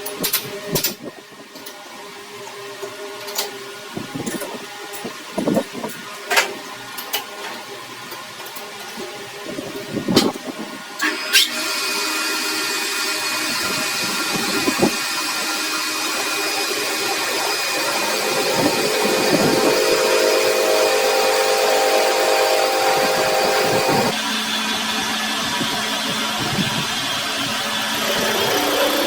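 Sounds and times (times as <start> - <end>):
power tool running: 9.5 - 29.0.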